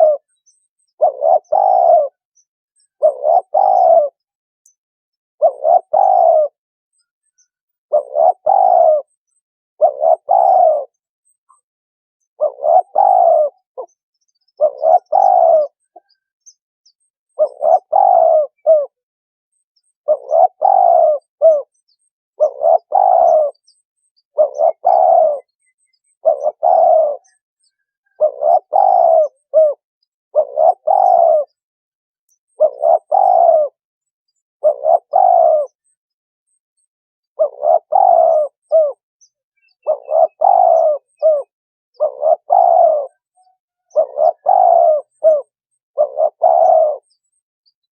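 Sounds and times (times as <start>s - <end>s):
dove cooing: 0.0s - 4.4s, 5.4s - 6.6s, 7.9s - 9.2s, 9.8s - 11.1s, 12.3s - 16.3s, 17.4s - 19.0s, 20.0s - 21.8s, 22.4s - 31.6s, 32.5s - 35.9s, 37.3s - 39.0s, 39.6s - 47.9s.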